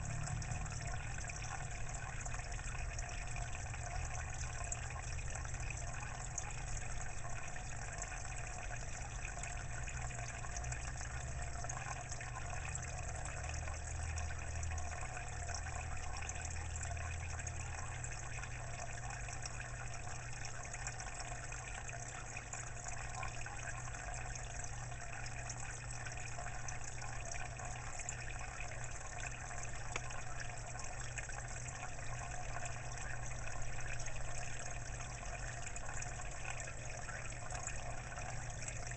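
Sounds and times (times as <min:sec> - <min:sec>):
low hum: 0:00.0 - 0:10.0
water gushing in aquarium: 0:00.0 - 0:38.9.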